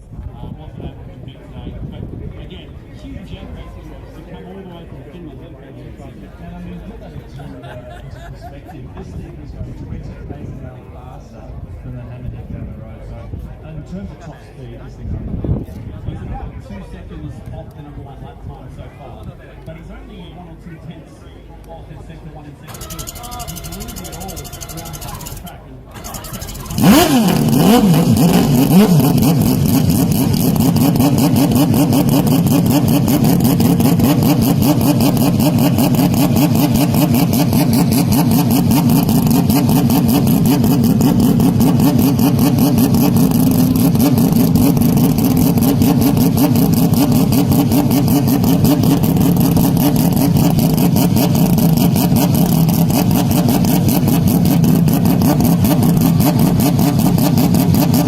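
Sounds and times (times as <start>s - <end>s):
distorted race car engine drone: 22.7s - 58.0s.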